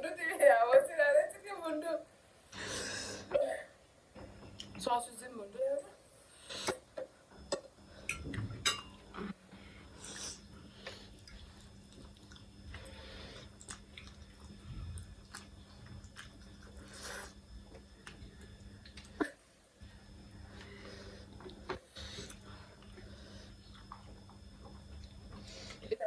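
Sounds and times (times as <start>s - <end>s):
steady low hum: 0.0s - 26.0s
chewing food: 10.8s - 19.2s, 20.5s - 25.8s.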